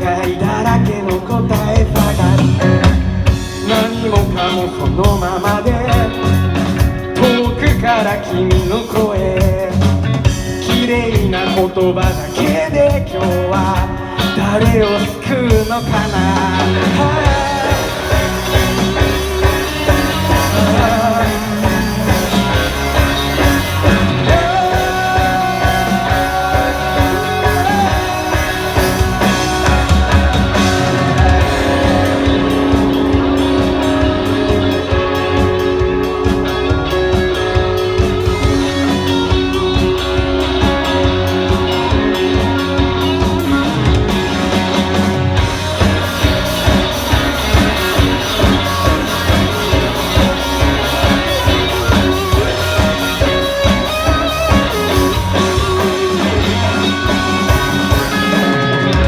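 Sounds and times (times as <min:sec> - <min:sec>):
drum kit: 0:00.0 - 0:59.0
electric guitar: 0:00.0 - 0:59.0
rock band music: 0:00.0 - 0:59.0.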